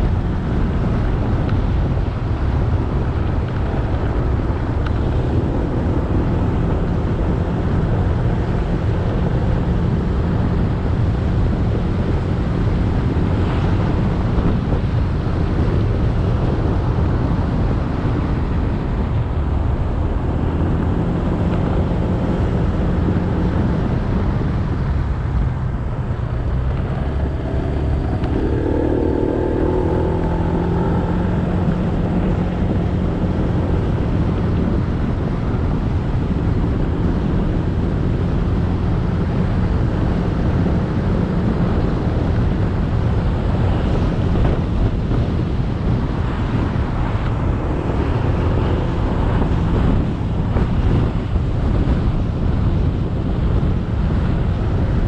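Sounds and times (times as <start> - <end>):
wind on microphone: 0.0 - 55.0
higher-pitched engine: 24.6 - 34.8.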